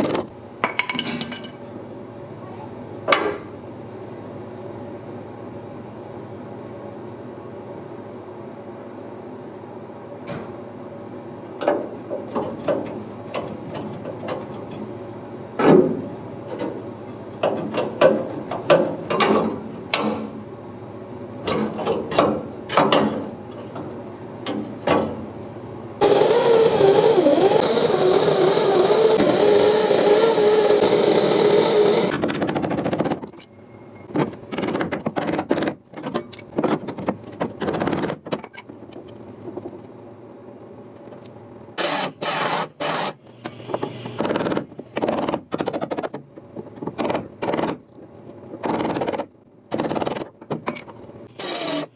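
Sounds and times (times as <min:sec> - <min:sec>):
power tool cutting sheet metal: 0:26.0 - 0:32.2, 0:41.8 - 0:44.6, 0:51.3 - 0:51.9.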